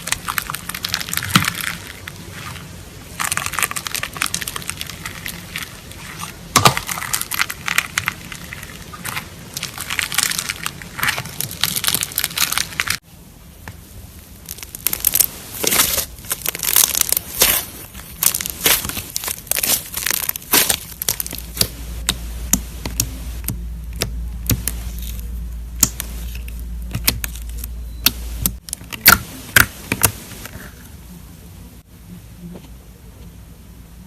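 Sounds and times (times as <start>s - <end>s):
slime squished by hand: 14.5s - 25.2s.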